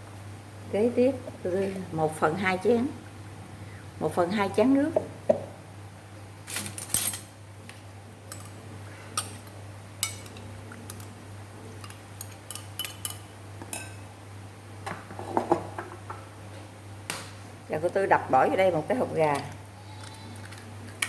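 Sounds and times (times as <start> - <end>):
steady low hum: 0.0 - 21.0
bowls and utensils clinking: 9.2 - 11.1, 11.8 - 14.0.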